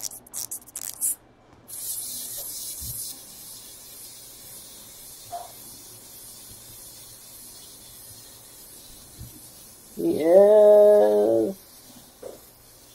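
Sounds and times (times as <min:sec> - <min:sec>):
steady hiss: 0:01.7 - 0:12.9.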